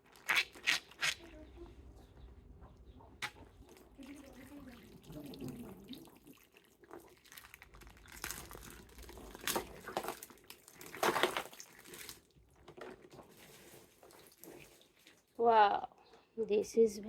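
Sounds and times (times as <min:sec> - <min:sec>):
plastic packaging crinkling: 0:07.2 - 0:12.3.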